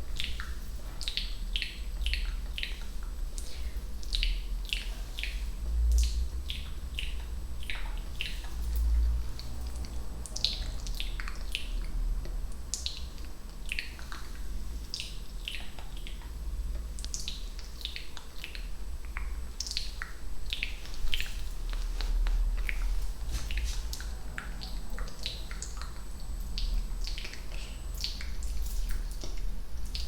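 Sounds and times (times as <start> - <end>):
low steady hum: 0.0 - 30.0
wet mouth clicks and pops: 9.7 - 21.3, 22.0 - 22.9.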